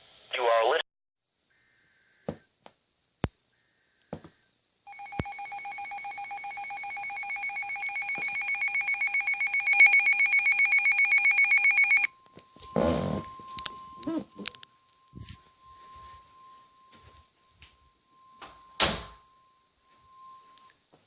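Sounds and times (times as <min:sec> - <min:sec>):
emergency alert tone warbling: 0:04.9 - 0:20.7.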